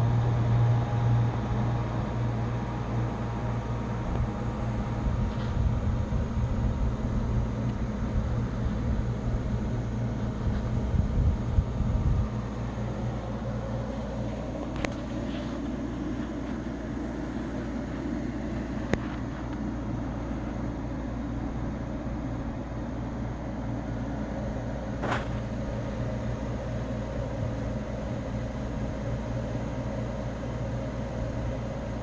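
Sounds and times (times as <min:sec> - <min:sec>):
steady machine hum: 0:00.0 - 0:32.0.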